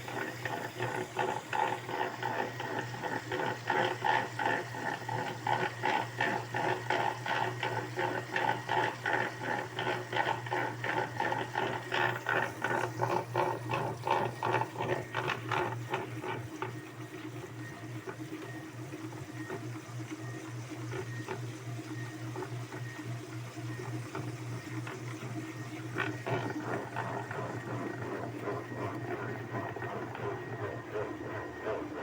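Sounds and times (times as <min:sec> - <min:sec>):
washing machine motor hum: 0:00.0 - 0:32.0
water sloshing in washing machine: 0:25.9 - 0:32.0.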